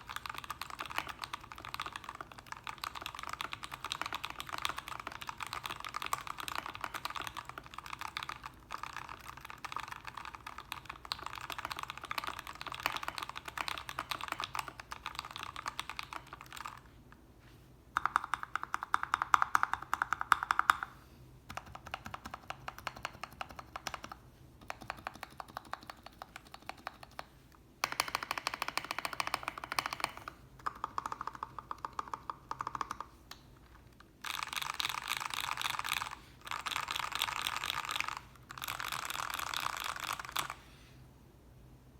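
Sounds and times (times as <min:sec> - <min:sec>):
mechanical keyboard typing: 0:00.0 - 0:16.8, 0:18.0 - 0:20.9, 0:21.5 - 0:33.1, 0:33.8 - 0:40.6.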